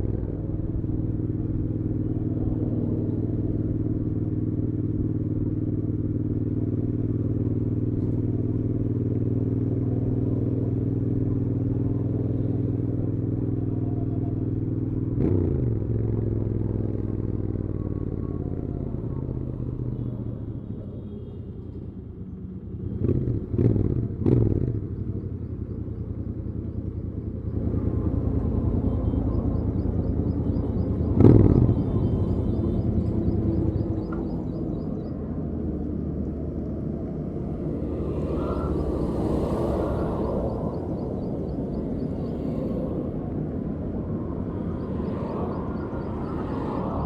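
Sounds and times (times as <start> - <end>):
motorcycle engine running: 22.1 - 39.2
motorcycle engine revving: 22.8 - 25.4, 27.4 - 44.8.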